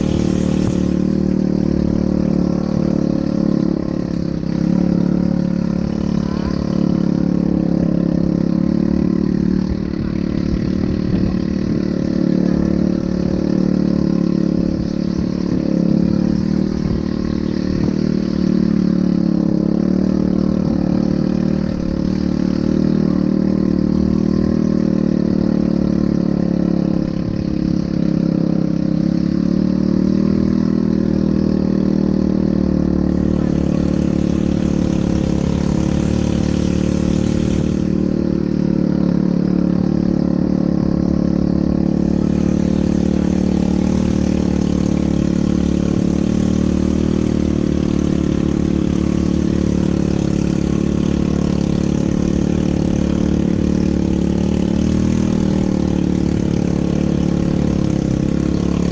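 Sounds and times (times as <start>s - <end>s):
atv engine droning: 0.0s - 58.9s.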